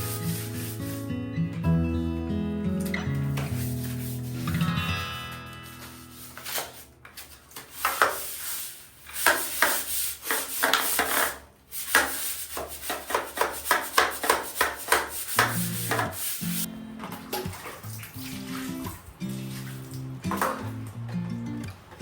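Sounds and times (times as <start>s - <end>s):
hard surface scrubbed by hand: 0.0s - 1.2s, 3.2s - 16.7s.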